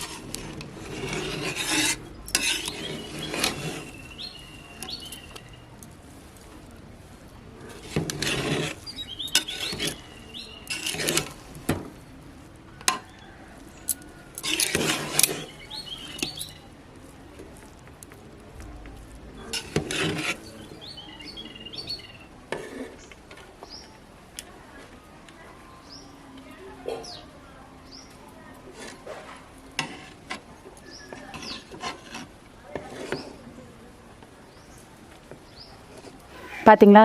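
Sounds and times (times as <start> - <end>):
metal spoon scraping metal pot: 0.0 - 5.4, 7.6 - 11.4, 14.3 - 16.6, 19.4 - 20.6, 21.8 - 23.0, 28.7 - 33.4
birds chirping faintly: 1.3 - 6.0, 8.7 - 11.2, 15.0 - 17.3, 18.9 - 28.6, 30.5 - 32.0, 32.8 - 37.0.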